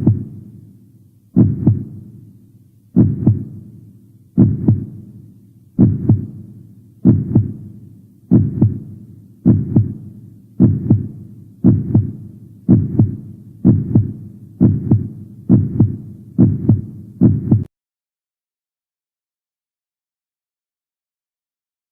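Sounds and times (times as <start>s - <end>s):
heartbeat thumps: 0.0s - 0.4s, 1.4s - 2.0s, 3.0s - 3.6s, 4.4s - 5.0s, 5.8s - 7.7s, 8.3s - 17.7s.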